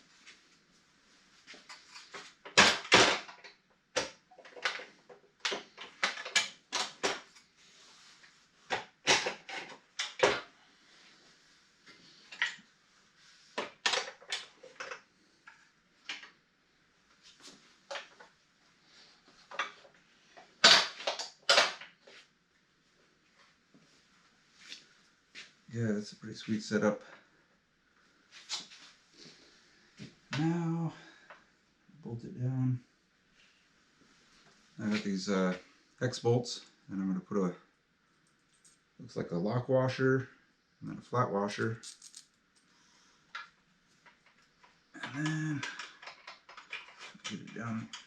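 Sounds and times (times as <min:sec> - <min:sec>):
metal parts clanking and rattling: 0:20.6 - 0:21.8, 0:41.8 - 0:42.4, 0:45.1 - 0:48.0.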